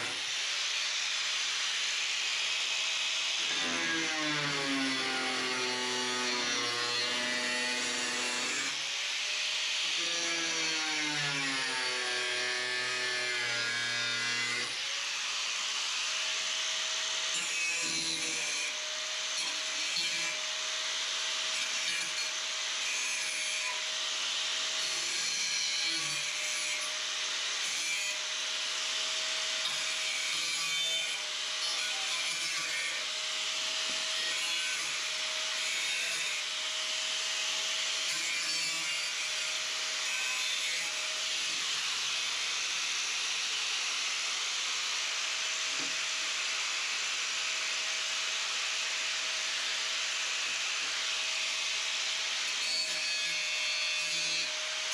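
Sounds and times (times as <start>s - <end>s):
power tool motor whine: 0.0s - 21.4s.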